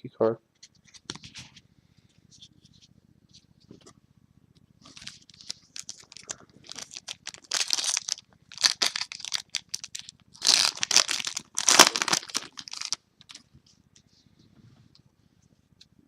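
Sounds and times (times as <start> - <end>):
foil wrapper tearing and crinkling: 4.8 - 13.4.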